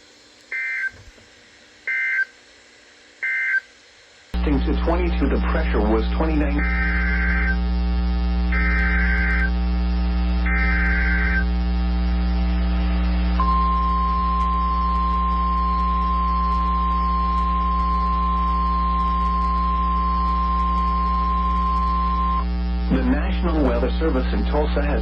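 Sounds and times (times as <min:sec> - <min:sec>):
electrical hum: 0:00.0 - 0:25.0
steady warning alarm tone: 0:00.5 - 0:01.0, 0:01.9 - 0:02.3, 0:03.2 - 0:03.6, 0:06.4 - 0:07.6, 0:08.5 - 0:09.5, 0:10.4 - 0:11.5, 0:13.4 - 0:22.5
warbling data screech: 0:06.6 - 0:07.6.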